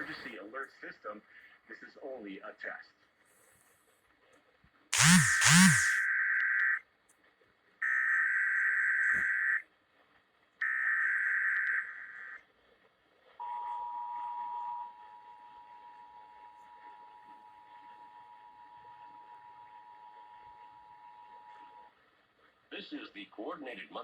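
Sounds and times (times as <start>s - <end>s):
screeching data bursts: 5.0s - 6.0s.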